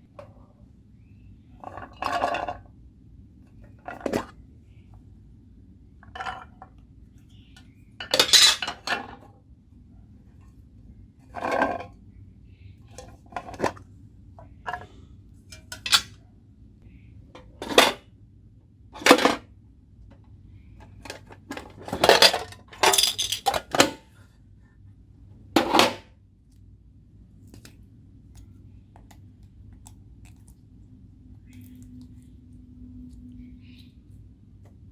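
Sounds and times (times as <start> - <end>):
containers and utensils clinking: 8.0 - 9.1, 15.5 - 16.1, 21.0 - 24.0.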